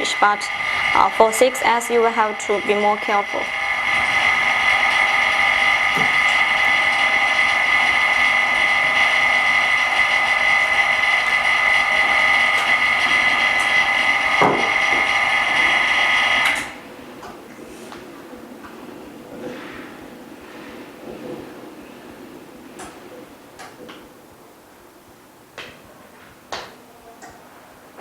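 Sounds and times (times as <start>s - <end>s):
small electric motor whining: 0.0s - 16.8s.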